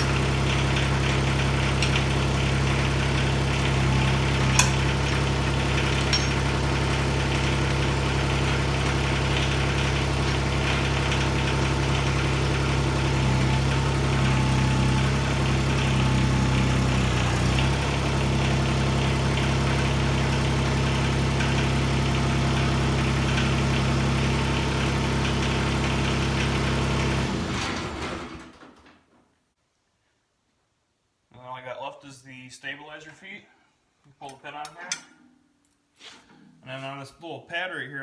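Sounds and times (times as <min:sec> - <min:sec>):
diesel tractor engine running: 0:00.0 - 0:28.8.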